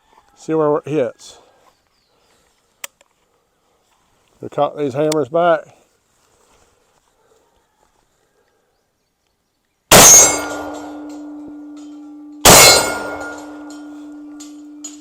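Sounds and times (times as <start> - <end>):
rifle shots: 9.9 - 11.4, 12.4 - 14.0
steel target plate ringing: 9.9 - 15.0.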